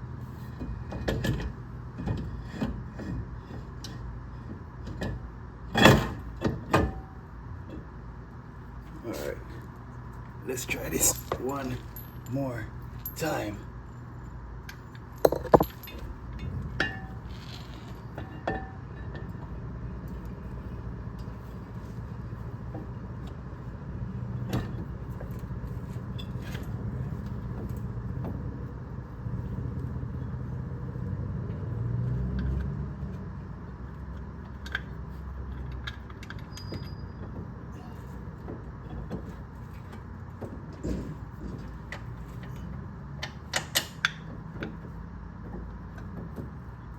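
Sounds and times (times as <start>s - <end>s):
metal clinks of tools and caliper: 10.6s - 13.6s, 15.1s - 17.1s.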